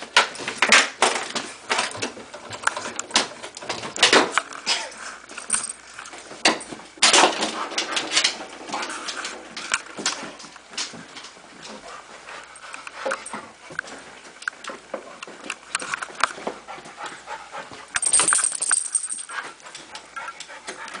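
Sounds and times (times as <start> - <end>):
puppy claws clicking and tapping: 17.9 - 21.0.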